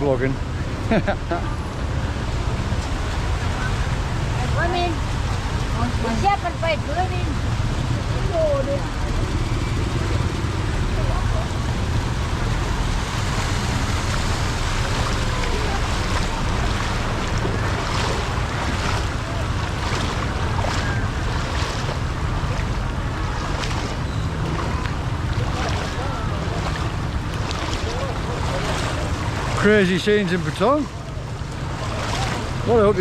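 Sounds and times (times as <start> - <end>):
floodwater rushing: 0.0 - 33.0
wind buffeting microphone: 7.0 - 29.7.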